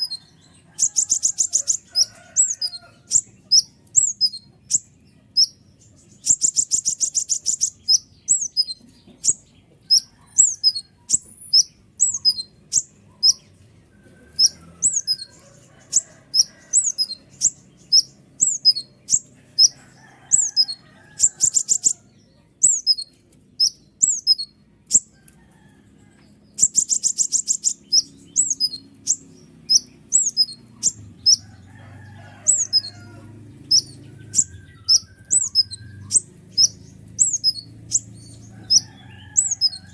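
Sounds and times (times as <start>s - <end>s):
bird chirping: 0.0s - 25.3s, 26.3s - 39.9s
bird buzzing trills: 14.4s - 23.0s, 26.6s - 39.9s.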